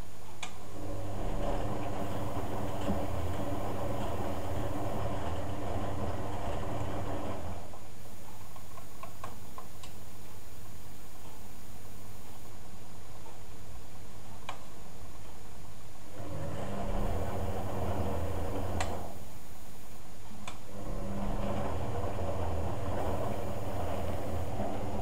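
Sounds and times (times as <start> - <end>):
motor humming: 0.4 - 7.9, 16.0 - 19.4, 20.4 - 25.0.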